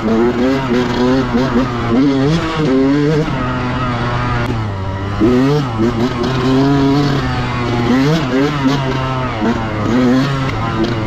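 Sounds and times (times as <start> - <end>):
dirt bike engine revving: 0.0 - 11.0.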